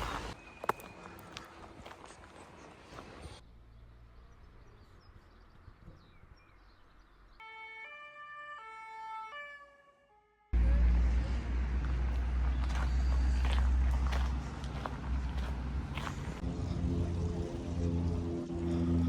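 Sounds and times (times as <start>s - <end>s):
quiet street sounds: 0.0s - 19.0s
emergency vehicle siren: 7.4s - 13.6s.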